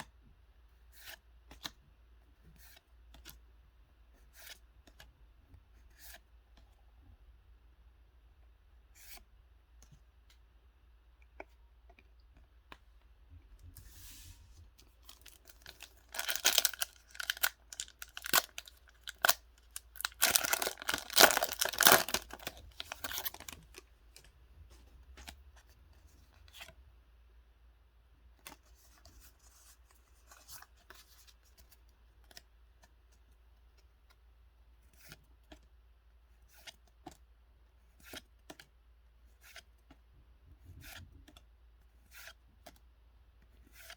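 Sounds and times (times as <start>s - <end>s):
handling clicks and rustles: 15.0s - 24.2s
cardboard packaging tearing: 15.1s - 23.8s.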